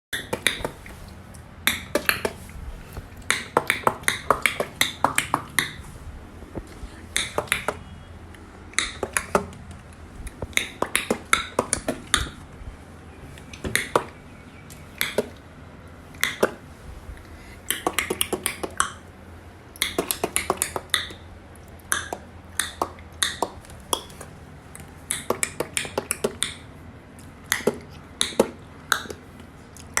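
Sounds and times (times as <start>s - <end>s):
person clicking with mouth: 7.1s - 9.5s, 17.6s - 19.0s, 19.8s - 26.7s, 27.5s - 30.0s.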